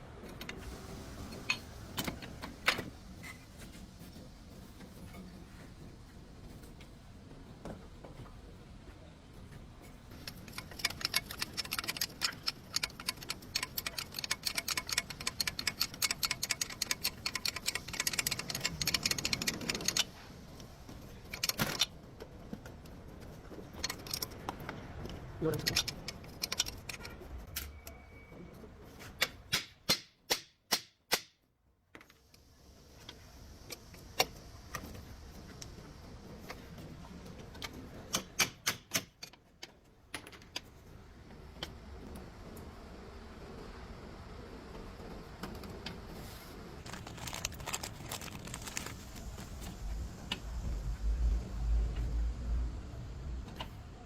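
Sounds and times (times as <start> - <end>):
scattered clicks: 10.2 - 20.1
low rumble: 48.2 - 54.0.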